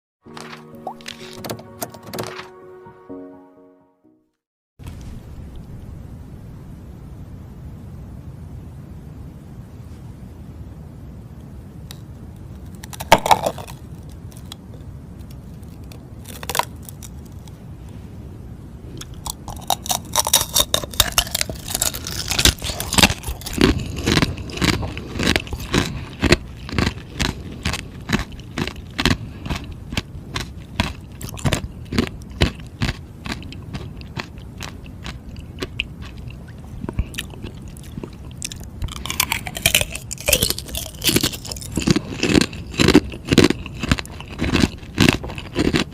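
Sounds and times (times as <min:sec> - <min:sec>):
crunching and chewing ice: 0:12.6 - 0:17.6, 0:19.0 - 0:45.9.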